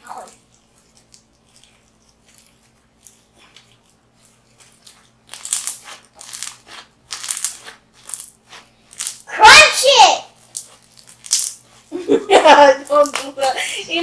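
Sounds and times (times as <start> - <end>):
slime crackling crunches: 0.1 - 9.7.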